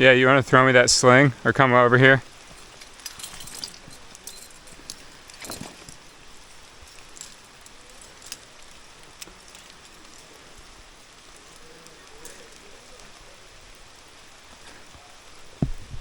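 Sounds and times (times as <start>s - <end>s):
rain hiss: 0.0s - 16.0s
metal climbing gear clinking: 2.2s - 13.2s.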